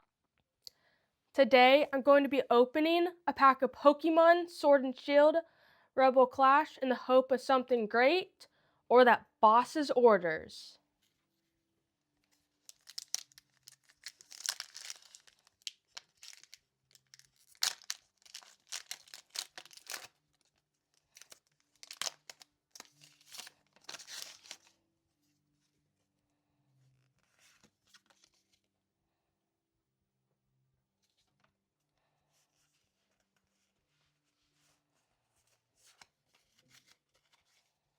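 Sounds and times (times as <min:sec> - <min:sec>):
foil wrapper tearing and crinkling: 0:12.7 - 0:24.7.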